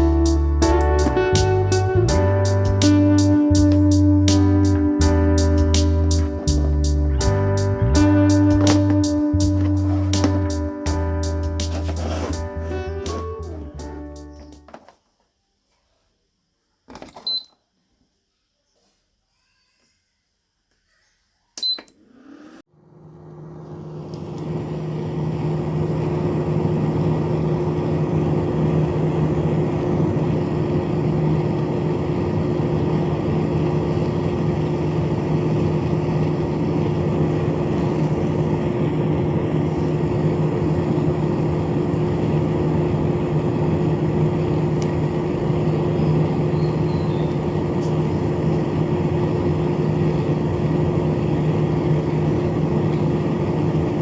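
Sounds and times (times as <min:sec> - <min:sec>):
air conditioner fan humming: 0:00.0 - 0:14.8, 0:22.8 - 0:54.0.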